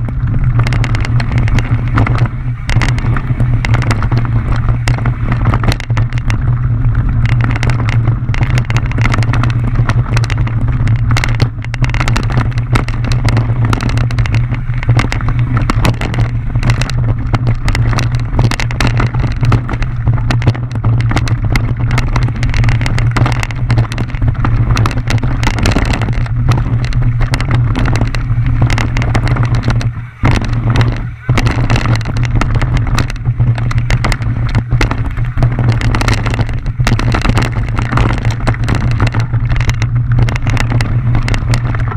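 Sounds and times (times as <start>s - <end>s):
bike rattling and knocking: 0.0s - 41.9s
wind rumble on microphone: 0.0s - 41.9s.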